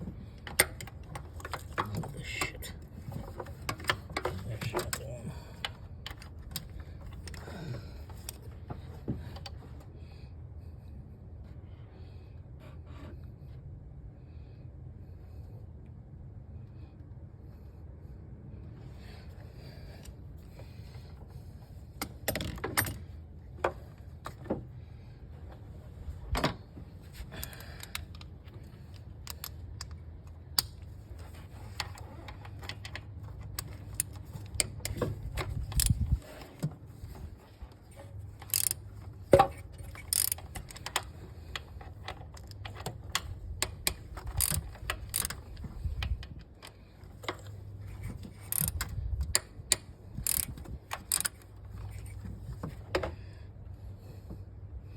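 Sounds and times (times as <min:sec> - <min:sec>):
steady low hum: 0:00.0 - 0:54.9
metallic clicks of hand tools: 0:28.9 - 0:30.8, 0:31.7 - 0:36.1, 0:38.4 - 0:52.3
ratchet clicking: 0:29.2 - 0:30.0, 0:38.3 - 0:41.7, 0:42.4 - 0:46.4, 0:47.3 - 0:52.2.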